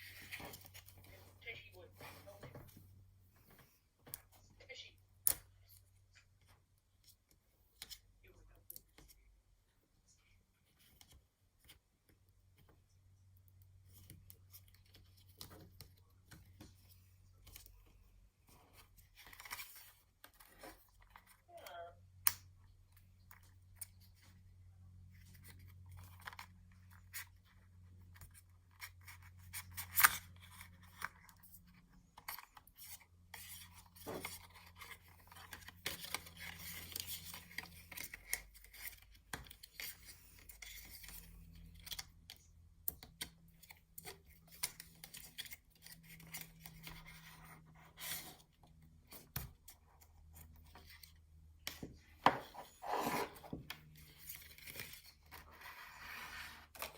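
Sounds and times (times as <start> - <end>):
cardboard and plastic rustling: 0.0 - 4.4, 25.0 - 42.2.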